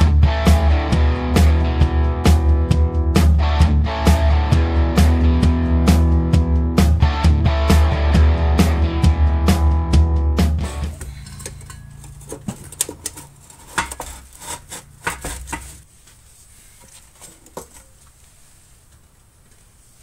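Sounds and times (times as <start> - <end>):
metal exhaust parts clinking: 10.6 - 15.9.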